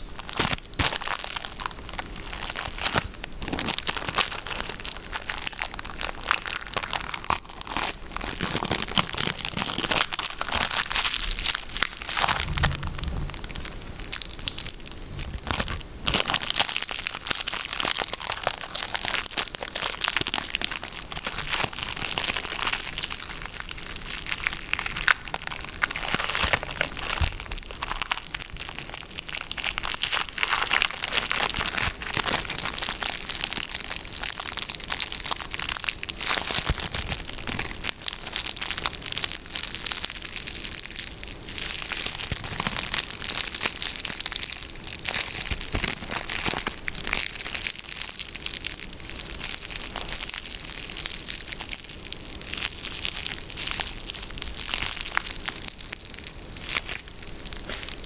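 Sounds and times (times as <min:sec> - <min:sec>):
packaging crinkling: 0:00.0 - 0:58.0.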